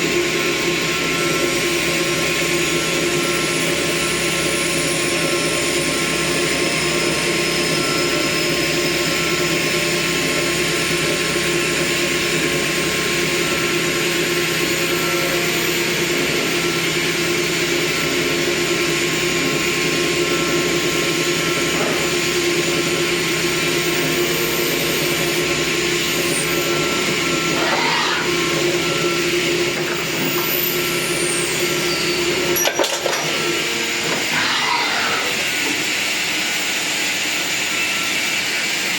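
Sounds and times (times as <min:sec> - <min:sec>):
lathe machine hum: 0:23.1 - 0:37.3
short machine whines: 0:23.6 - 0:36.9.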